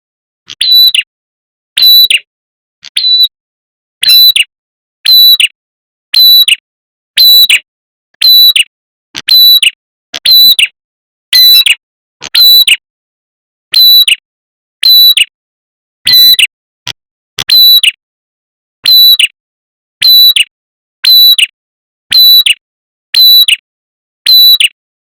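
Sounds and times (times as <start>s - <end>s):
bird chirping call: 0.6s - 1.1s, 3.0s - 3.3s.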